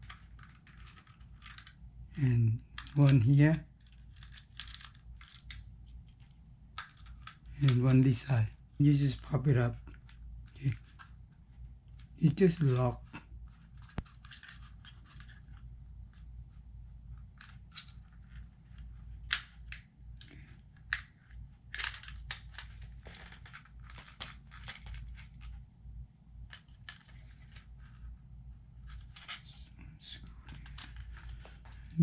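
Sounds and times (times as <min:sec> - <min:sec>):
plastic shell snapping: 0:19.3 - 0:19.9.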